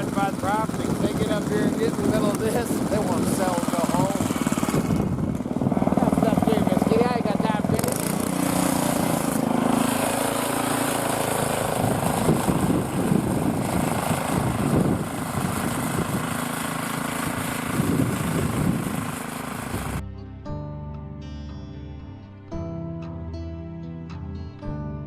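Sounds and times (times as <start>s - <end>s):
wind gusting against microphone: 0.0s - 20.0s
steady low hum: 0.4s - 20.0s.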